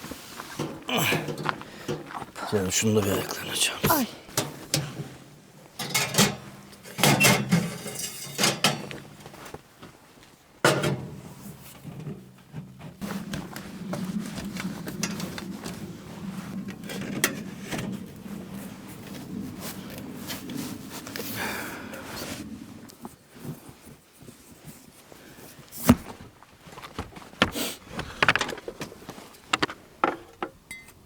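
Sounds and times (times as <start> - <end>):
camping gear knocks and clatters: 0.0 - 2.4, 3.8 - 10.0, 25.7 - 31.0.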